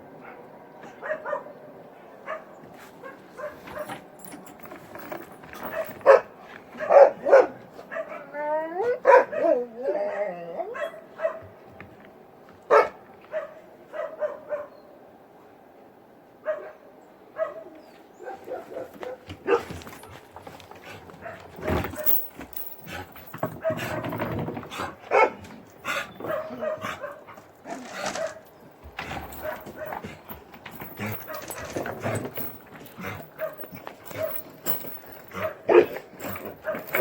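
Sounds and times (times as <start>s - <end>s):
dogs barking: 0.2s - 1.6s, 2.2s - 4.0s, 5.6s - 8.3s, 8.9s - 11.6s, 12.7s - 14.8s, 16.4s - 20.1s, 21.1s - 30.2s, 30.8s - 37.0s
dogs yelping: 21.2s - 37.0s.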